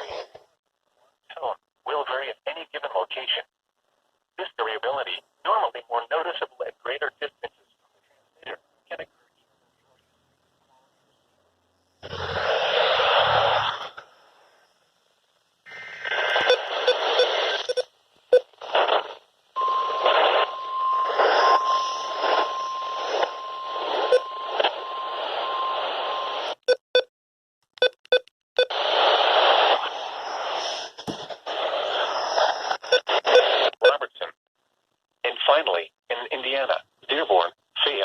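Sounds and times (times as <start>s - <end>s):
radio static hissing: 1.0s - 26.6s, 28.6s - 38.0s
steady tone: 19.6s - 26.4s.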